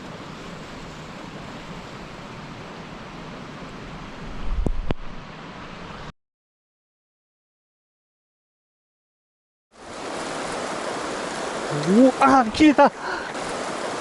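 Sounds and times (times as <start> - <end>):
flowing river water: 0.0 - 6.1, 9.8 - 14.0.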